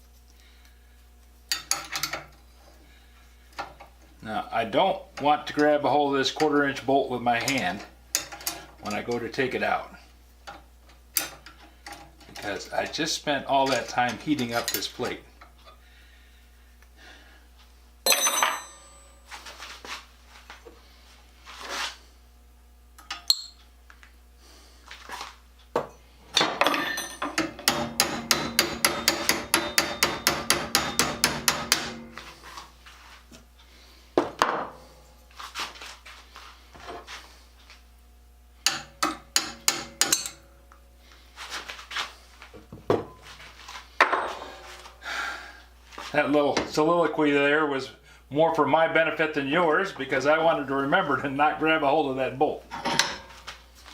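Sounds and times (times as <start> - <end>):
metallic clinks and knocks: 18.1 - 19.3, 23.1 - 23.6, 26.4 - 27.6.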